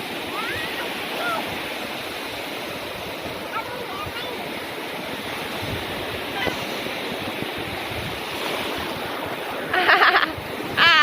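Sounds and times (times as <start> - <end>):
sea surf rushing: 0.0 - 11.0.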